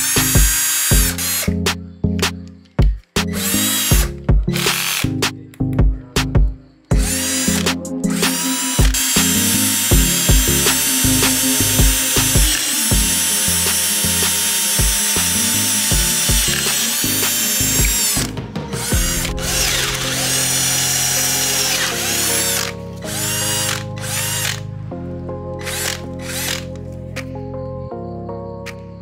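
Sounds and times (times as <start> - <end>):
cordless drill motor running: 0.0 - 1.6, 3.3 - 5.1, 7.0 - 24.6, 25.6 - 26.7.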